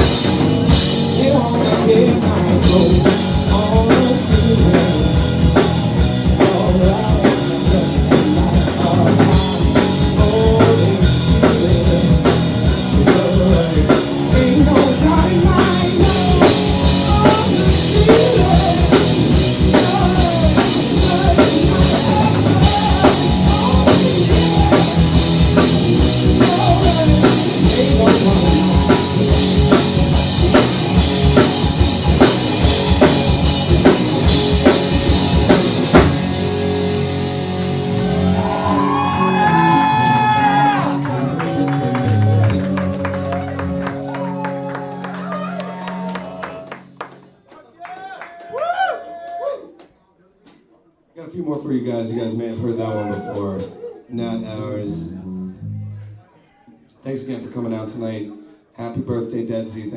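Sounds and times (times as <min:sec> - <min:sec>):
drum kit fast beat: 0:00.0 - 0:44.4
live rock band playing: 0:00.0 - 0:47.4.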